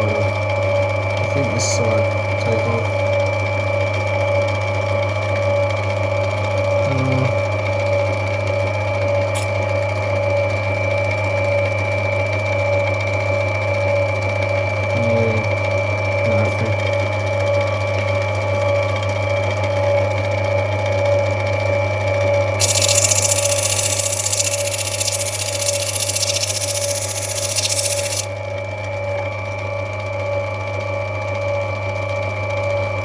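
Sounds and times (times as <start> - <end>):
grinding machine motor humming: 22.6 - 28.3
stone hissing against grinding wheel: 22.6 - 28.3.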